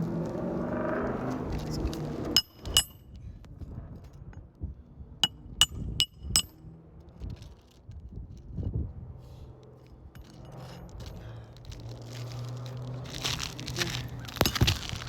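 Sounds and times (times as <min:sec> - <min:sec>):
hammer striking metal: 0:02.4 - 0:03.0, 0:05.2 - 0:06.6.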